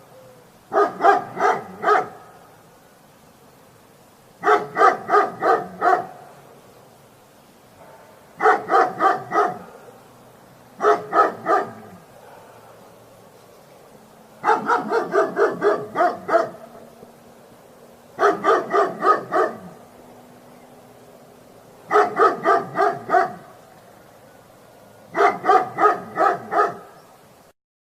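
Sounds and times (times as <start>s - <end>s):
dog barking: 0.7s - 2.4s, 4.4s - 6.2s, 7.8s - 10.0s, 10.8s - 12.6s, 14.4s - 16.6s, 18.2s - 19.7s, 21.9s - 23.5s, 25.1s - 27.0s.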